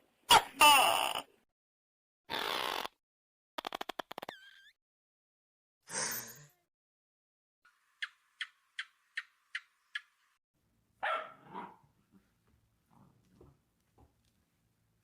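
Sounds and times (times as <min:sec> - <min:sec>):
dog barking: 0:11.0 - 0:11.8.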